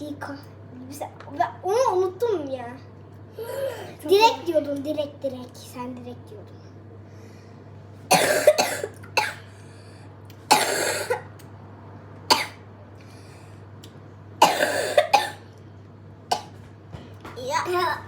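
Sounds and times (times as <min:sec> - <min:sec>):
child coughing: 0:08.1 - 0:09.5, 0:10.5 - 0:11.3, 0:12.3 - 0:12.6, 0:14.4 - 0:15.5, 0:16.3 - 0:16.6.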